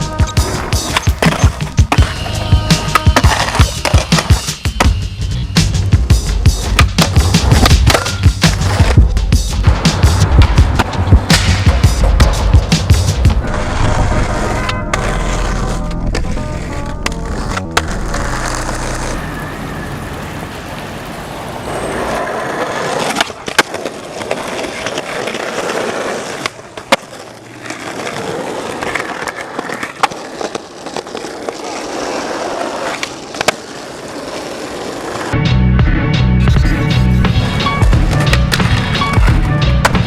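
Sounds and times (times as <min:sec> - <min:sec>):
skateboard wheels rolling: 0:00.0 - 0:35.4, 0:36.6 - 0:40.0
skateboard popping and landing: 0:00.2 - 0:05.0, 0:05.7 - 0:19.1, 0:22.1 - 0:35.4, 0:37.6 - 0:40.0.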